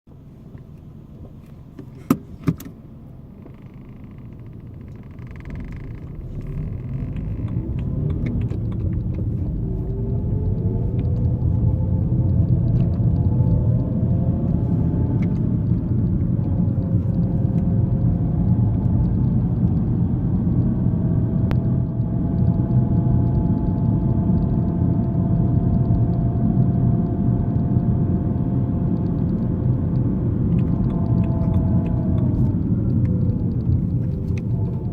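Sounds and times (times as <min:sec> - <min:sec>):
car road and drivetrain rumble: 0:00.1 - 0:34.9
sharp clicks: 0:03.5 - 0:19.9, 0:28.9 - 0:34.9
whine climbing in pitch: 0:03.5 - 0:34.9.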